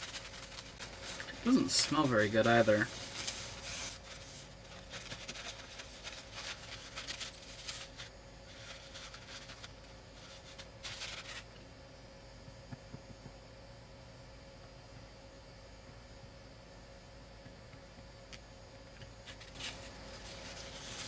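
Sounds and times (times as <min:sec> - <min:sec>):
paper towel scrubbing: 0:00.0 - 0:11.4, 0:19.3 - 0:21.0
steady low hum: 0:00.0 - 0:21.0.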